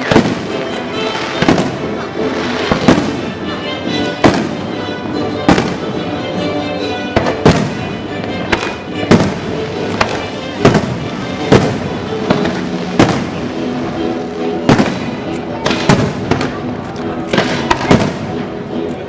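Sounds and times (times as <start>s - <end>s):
fireworks bangs: 0.0s - 6.3s, 7.1s - 18.5s
music with sustained notes: 0.0s - 19.0s.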